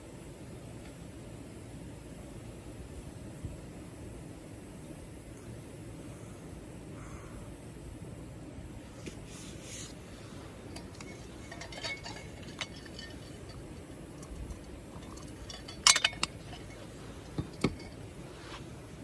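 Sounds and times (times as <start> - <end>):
tableware clinking: 10.8 - 18.2.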